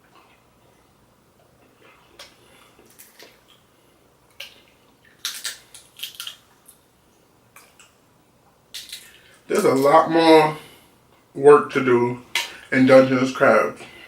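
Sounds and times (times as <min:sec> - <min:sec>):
crab shell cracking: 0:04.3 - 0:06.8, 0:08.7 - 0:09.4.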